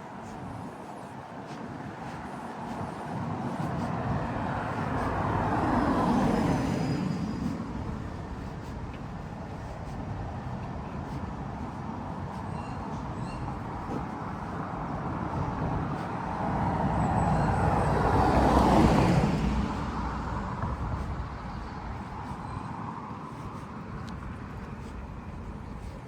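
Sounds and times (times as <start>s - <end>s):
street hum: 0.0s - 26.0s
car driving past: 16.4s - 20.6s.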